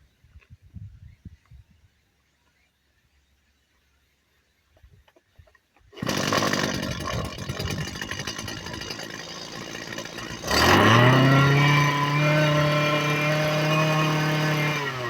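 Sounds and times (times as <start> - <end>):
two-stroke engine running roughly: 6.0 - 15.0.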